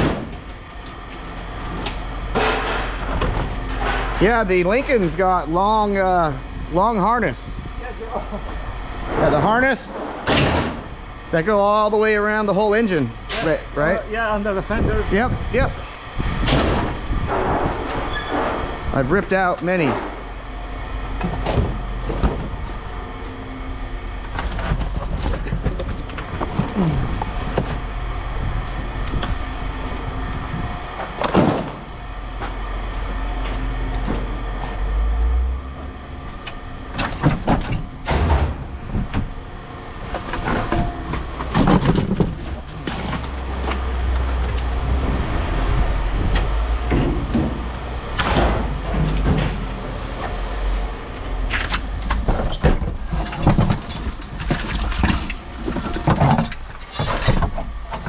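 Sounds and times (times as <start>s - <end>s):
knocks and clanks: 0.0s - 4.3s, 9.1s - 10.9s, 16.2s - 18.7s, 19.6s - 20.3s, 31.0s - 32.6s, 36.9s - 39.4s, 40.1s - 44.8s, 46.2s - 50.4s, 51.5s - 58.0s
low machine drone: 0.0s - 58.0s.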